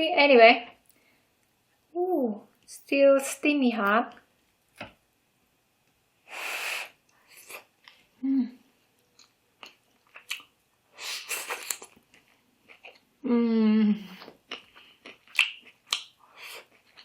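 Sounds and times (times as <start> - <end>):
wet chewing: 9.1 - 10.5, 11.4 - 13.1, 14.2 - 17.0.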